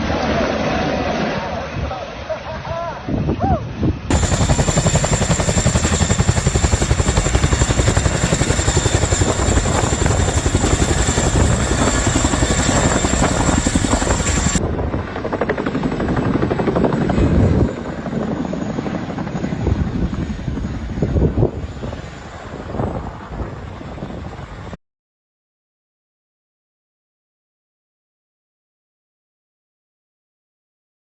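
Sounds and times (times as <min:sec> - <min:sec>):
helicopter rotor chopping: 0:04.1 - 0:24.7.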